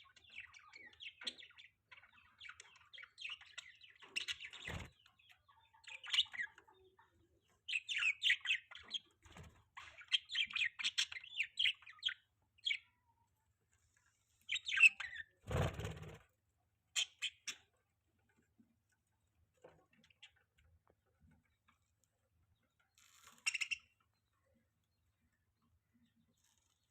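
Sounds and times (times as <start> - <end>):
budgerigars chirping: 14.5 - 16.2, 17.0 - 17.6, 23.4 - 23.9.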